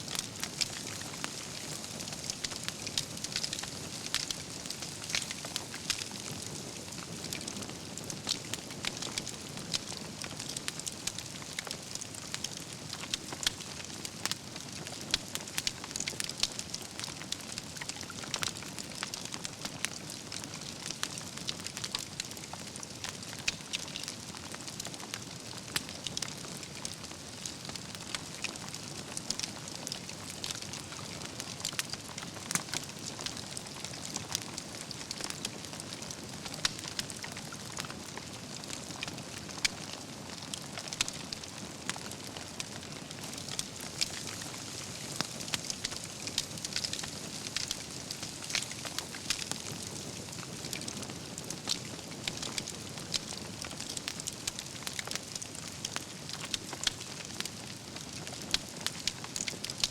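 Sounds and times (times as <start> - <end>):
pops and cracks of fire: 0.0 - 59.9
wood fire crackling: 0.0 - 59.9.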